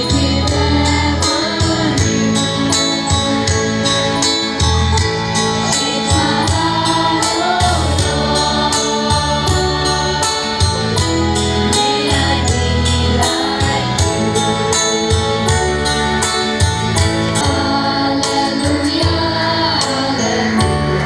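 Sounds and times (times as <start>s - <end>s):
choir singing a hymn: 0.0s - 2.7s, 5.6s - 14.8s, 17.3s - 21.0s
instrumental backing with beat: 0.0s - 21.0s.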